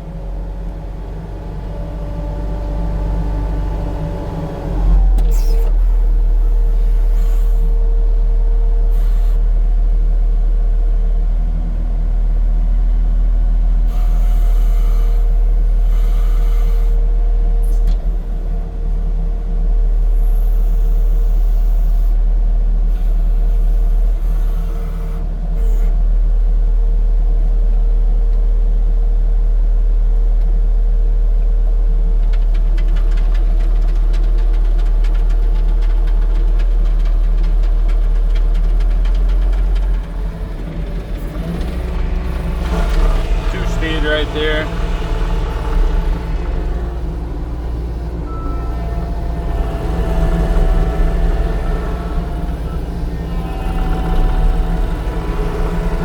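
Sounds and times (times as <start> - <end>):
diesel engine running steadily: 0.0 - 56.0
steady whine: 43.0 - 56.0.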